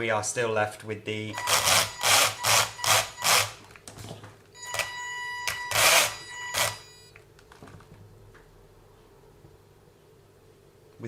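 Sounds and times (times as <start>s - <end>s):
toy car electric whine: 1.4s - 3.6s, 4.7s - 6.9s.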